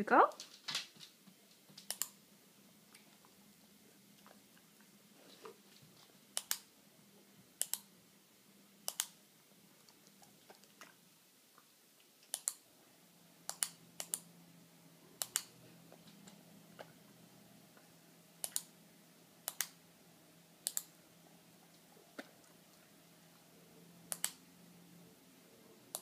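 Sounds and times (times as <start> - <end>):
faint low hum: 0.0 - 26.0
sharp clicks: 1.8 - 2.2, 6.4 - 6.7, 7.6 - 7.9, 8.9 - 9.2, 12.2 - 12.6, 13.5 - 14.3, 15.2 - 15.5, 18.4 - 18.7, 19.4 - 19.8, 20.6 - 20.9, 24.1 - 24.4.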